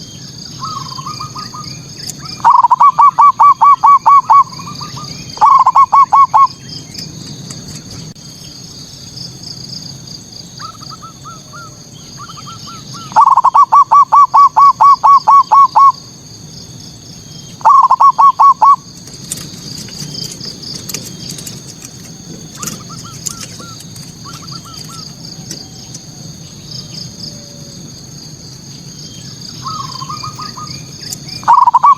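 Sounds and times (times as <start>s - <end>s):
continuous high chirping: 0.0s - 31.9s
dove cooing: 0.6s - 6.6s, 10.6s - 16.0s, 17.6s - 27.7s, 29.6s - 31.9s.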